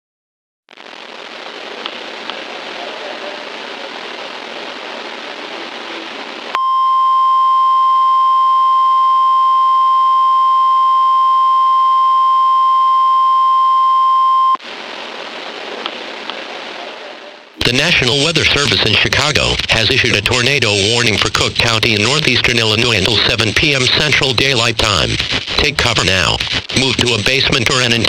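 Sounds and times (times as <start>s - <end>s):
steady hiss: 0.8s - 6.6s, 14.6s - 28.0s.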